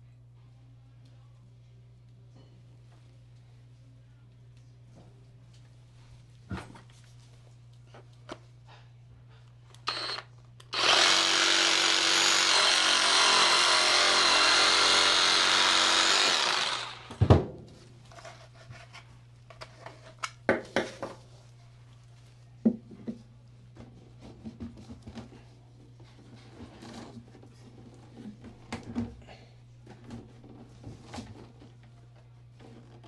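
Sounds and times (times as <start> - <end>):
power drill running: 9.9 - 17.2.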